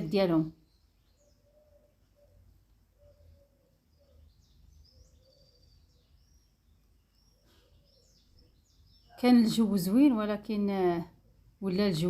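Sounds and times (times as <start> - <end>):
faint bird chirps: 0.0 - 12.0.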